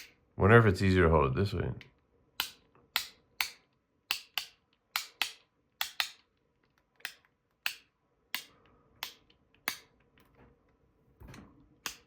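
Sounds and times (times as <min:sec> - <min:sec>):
fidget toy clicking: 0:02.4 - 0:06.3, 0:07.0 - 0:09.9.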